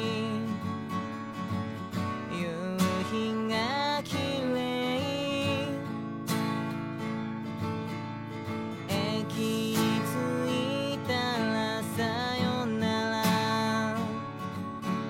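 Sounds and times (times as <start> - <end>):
strummed acoustic guitar: 0.0 - 15.0.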